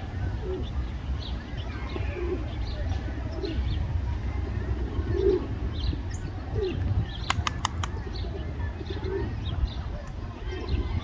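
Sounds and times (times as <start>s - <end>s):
sparrows chirping: 0.0s - 11.0s
pigeons cooing: 0.2s - 0.8s, 1.7s - 3.7s, 4.5s - 5.6s, 6.4s - 9.5s
quick sharp clicks: 7.2s - 8.0s.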